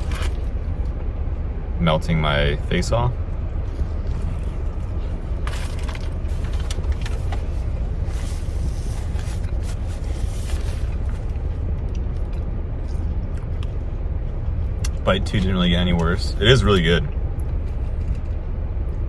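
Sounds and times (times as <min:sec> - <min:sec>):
person biting and chewing sandwich: 0:00.0 - 0:00.9, 0:03.3 - 0:13.8
car engine rumble inside cabin: 0:00.0 - 0:19.0.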